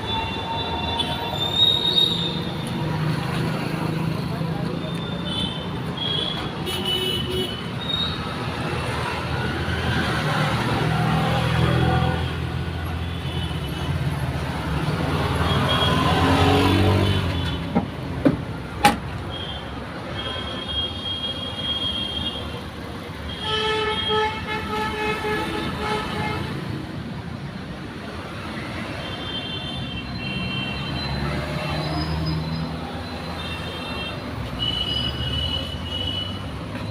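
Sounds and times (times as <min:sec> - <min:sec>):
road traffic: 0:00.0 - 0:36.9
vehicle horns: 0:04.9 - 0:08.2, 0:23.2 - 0:26.7.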